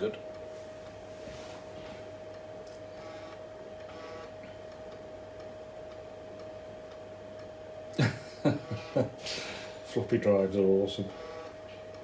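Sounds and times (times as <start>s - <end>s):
floppy drive head buzzing: 2.1s - 9.2s, 9.8s - 12.0s.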